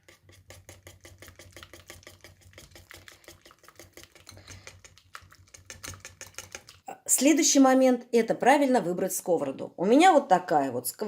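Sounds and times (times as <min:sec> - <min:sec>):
whisk beating batter in bowl: 0:00.0 - 0:06.8.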